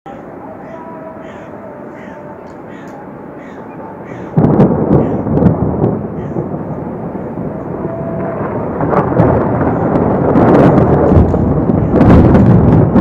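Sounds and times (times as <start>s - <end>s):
thunder crack and rolling rumble: 4.0s - 13.0s.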